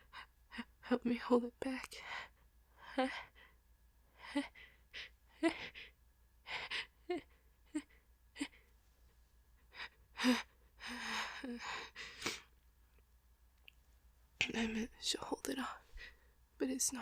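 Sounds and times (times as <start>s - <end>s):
woman gasping breaths: 9.7s - 12.5s.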